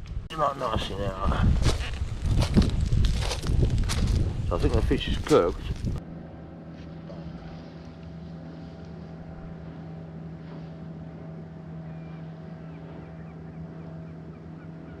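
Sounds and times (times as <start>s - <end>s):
motor humming: 5.7s - 15.0s.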